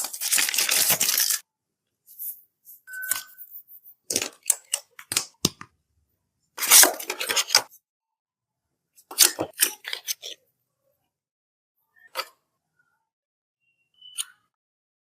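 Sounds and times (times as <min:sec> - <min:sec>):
packaging rustling and tearing: 0:00.0 - 0:01.4.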